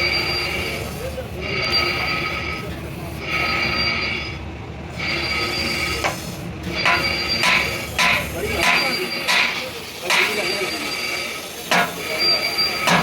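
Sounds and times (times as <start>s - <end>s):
metal squealing: 1.4s - 13.0s
sharp metallic knocks: 6.8s - 10.5s, 11.7s - 12.1s, 12.8s - 13.0s.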